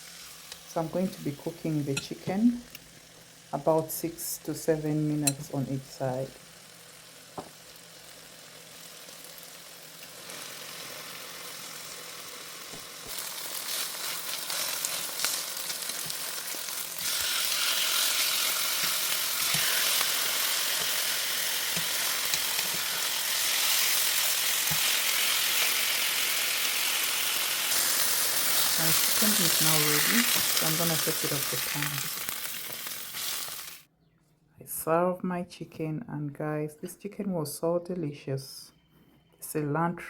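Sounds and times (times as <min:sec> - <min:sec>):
chicken sizzling in a pan: 0:00.0 - 0:33.9.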